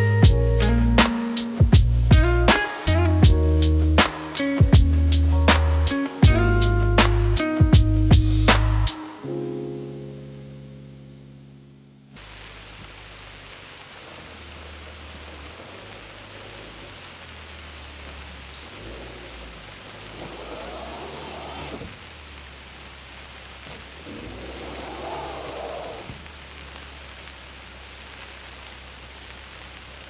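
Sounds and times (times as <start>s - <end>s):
guitar music track: 0.0s - 12.1s
high outdoor hiss: 0.0s - 30.0s.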